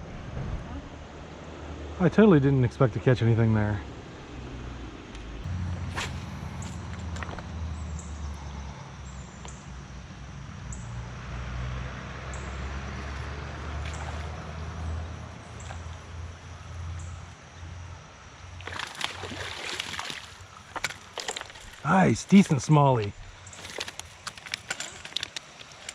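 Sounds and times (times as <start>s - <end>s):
creek water running: 13.2s - 16.4s, 18.2s - 25.9s.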